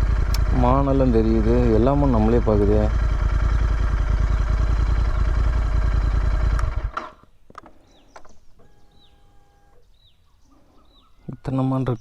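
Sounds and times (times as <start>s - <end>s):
motorcycle engine idling: 0.0s - 7.2s.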